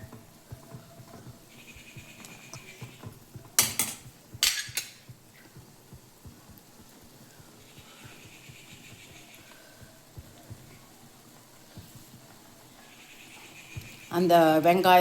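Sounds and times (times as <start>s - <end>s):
soup bubbling: 0.0s - 15.0s
utensil clinking against pot: 2.2s - 5.1s.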